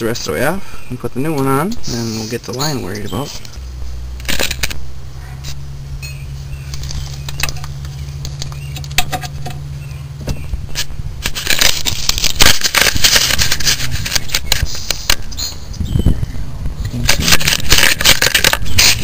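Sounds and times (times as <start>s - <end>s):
low steady hum: 0.0s - 19.0s
hand tools clicking and scraping metal: 10.7s - 15.4s, 16.9s - 19.0s.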